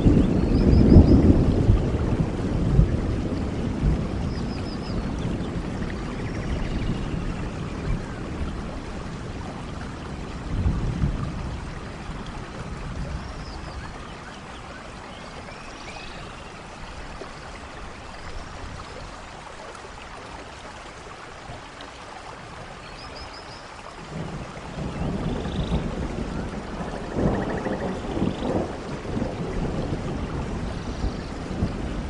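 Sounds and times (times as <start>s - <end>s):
low thunder rumble: 0.0s - 14.0s, 24.0s - 32.0s
steady rainfall in forest: 0.0s - 32.0s.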